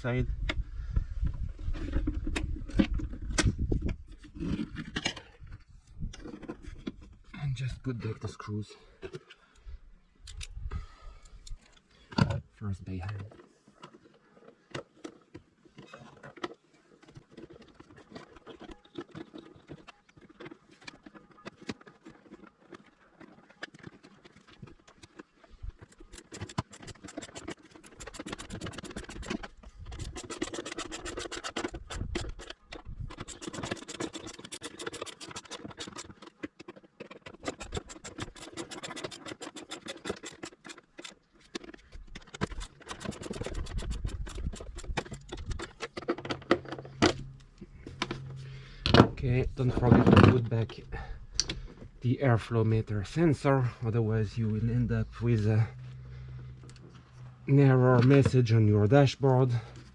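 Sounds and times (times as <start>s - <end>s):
scratching of hand work: 13.2s - 53.6s
rapid clicking: 24.6s - 46.1s.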